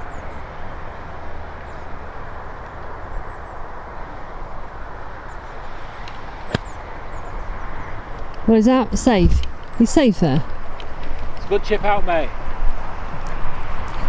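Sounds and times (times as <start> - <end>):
outdoor background rumble and hiss: 0.0 - 14.0
golf club striking ball: 6.0 - 7.2.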